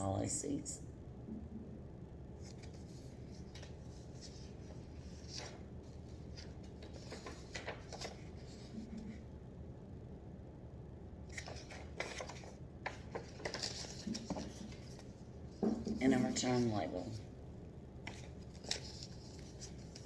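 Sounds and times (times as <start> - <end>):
low steady hum: 0.0 - 20.0
paper rustling and shuffling: 2.4 - 9.3, 11.3 - 17.3, 18.0 - 20.0.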